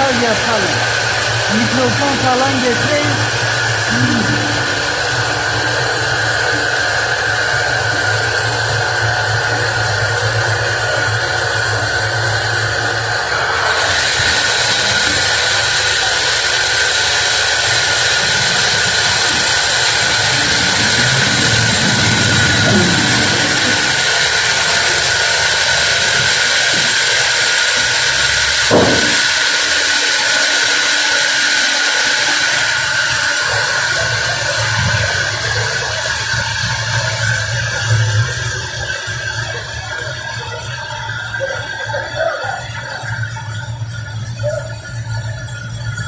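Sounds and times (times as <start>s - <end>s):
sawmill machinery whining: 0.0s - 46.0s
short knock: 28.7s - 29.4s.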